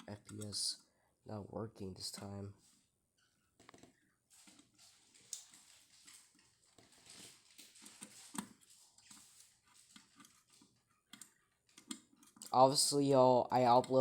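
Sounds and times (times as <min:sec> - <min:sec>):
small clicks and light knocks: 0:00.0 - 0:00.6, 0:03.2 - 0:12.6.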